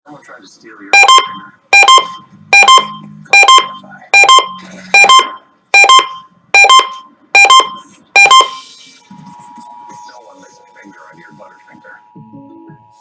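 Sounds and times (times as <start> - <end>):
electronic alarm double beeps: 1.0 - 8.7.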